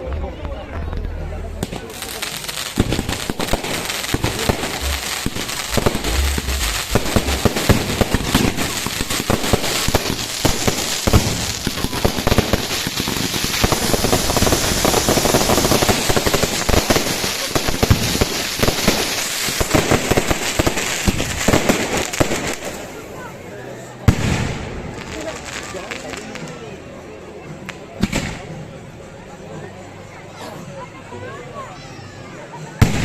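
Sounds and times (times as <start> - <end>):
fireworks bangs and pops: 1.6 - 22.8, 32.8 - 33.0.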